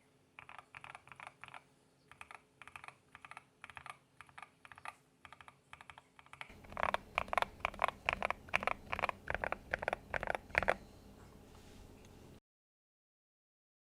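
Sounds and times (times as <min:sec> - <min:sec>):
mechanical keyboard typing: 0:00.4 - 0:10.8.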